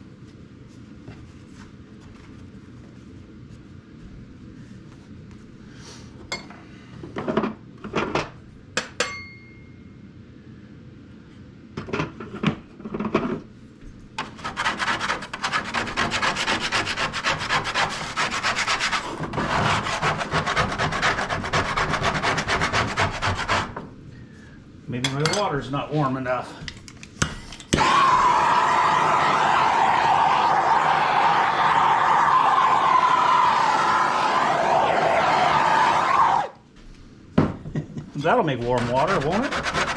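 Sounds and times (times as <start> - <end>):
knocks and clinks: 8.8 - 9.8
fast scraping strokes: 14.2 - 23.7, 38.4 - 39.9.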